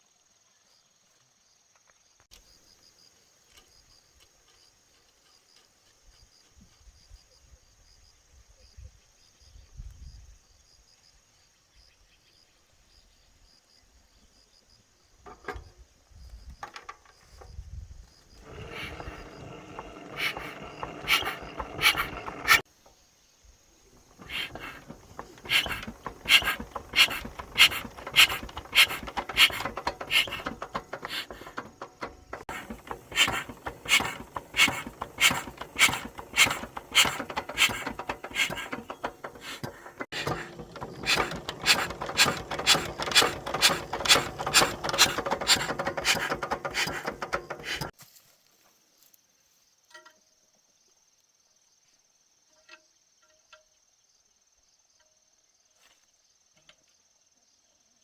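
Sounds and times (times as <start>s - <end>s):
high chirring of crickets: 0.0s - 58.0s
rhythmic scraping strokes: 18.4s - 22.6s, 24.0s - 47.9s.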